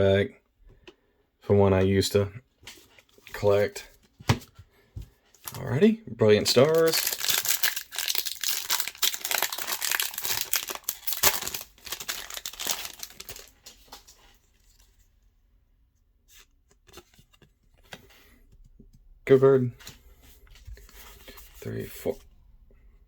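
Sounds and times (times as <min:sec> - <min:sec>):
foil wrapper tearing and crinkling: 0:06.6 - 0:14.0.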